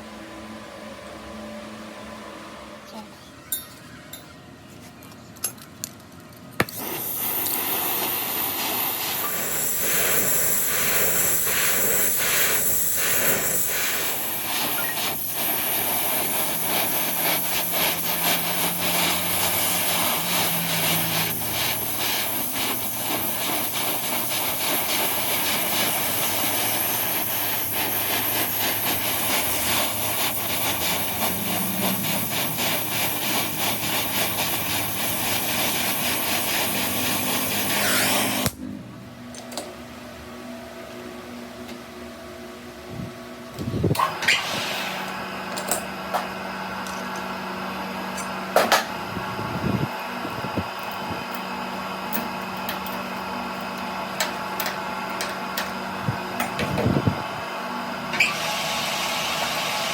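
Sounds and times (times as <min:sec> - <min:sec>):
power tool rasping on metal: 0:06.9 - 0:38.6.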